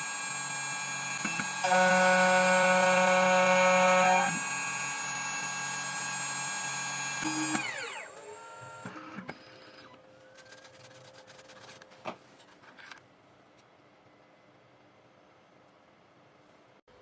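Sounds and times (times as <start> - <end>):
cutter spindle whine: 0.0 - 10.0.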